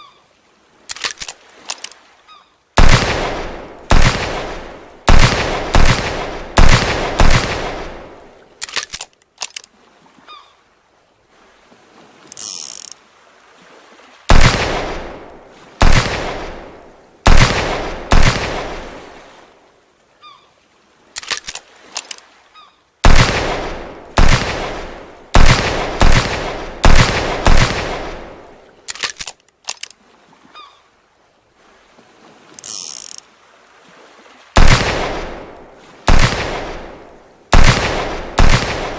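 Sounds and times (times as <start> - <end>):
echoing revolver shots: 2.8 - 8.2, 14.3 - 15.2, 15.8 - 16.6, 17.3 - 18.8, 23.0 - 28.4, 34.6 - 38.9.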